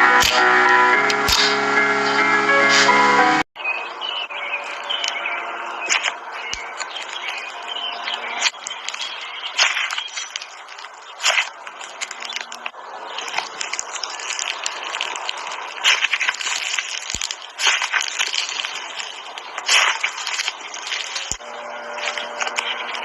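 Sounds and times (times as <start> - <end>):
slime squishing and crackling: 5.8 - 23.0
slime squelching pops: 5.9 - 6.2, 8.4 - 12.6, 13.2 - 21.4.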